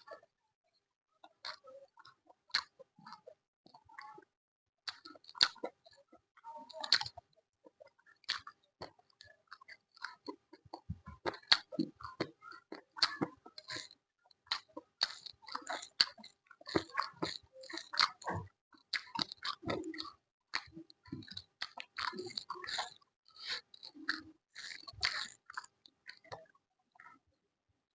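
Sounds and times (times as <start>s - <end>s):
person chewing crunchy food: 1.4s - 3.2s, 4.9s - 6.0s, 6.8s - 7.2s, 7.8s - 26.5s.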